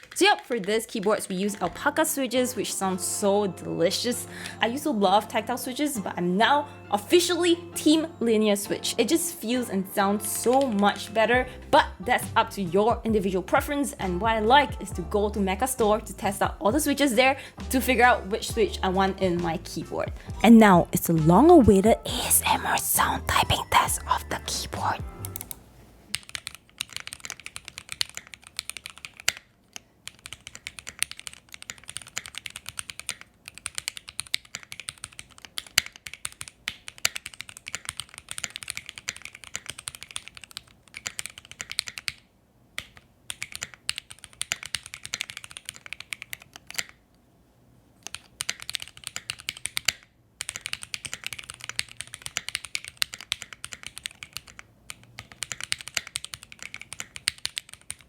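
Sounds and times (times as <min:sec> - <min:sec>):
mechanical keyboard typing: 0:10.3 - 0:11.4, 0:22.6 - 0:47.0, 0:48.0 - 0:58.0.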